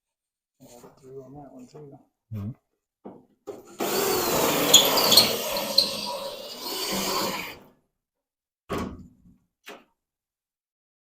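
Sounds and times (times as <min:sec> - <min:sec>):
power tool on sheet metal: 0:03.7 - 0:07.6.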